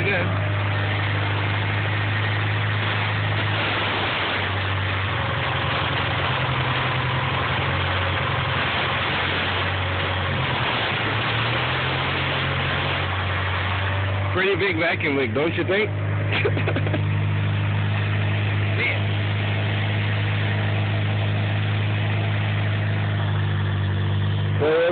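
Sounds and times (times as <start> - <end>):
car engine idling: 0.0 - 24.9.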